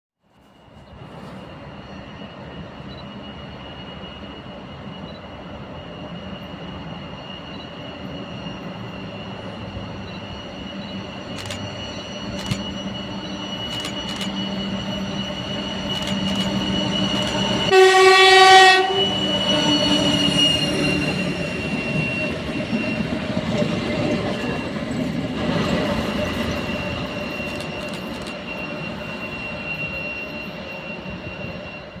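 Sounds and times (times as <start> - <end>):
diesel locomotives passing: 0.3 - 32.0
turbocharger high whistle: 6.8 - 23.3, 26.0 - 32.0
train horn blast: 17.6 - 21.4.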